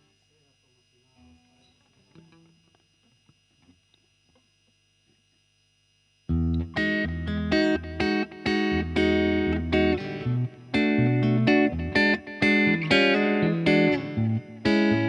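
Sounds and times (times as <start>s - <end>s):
faint amp hum: 0.0s - 15.0s
clean electric guitar chords: 6.3s - 15.0s.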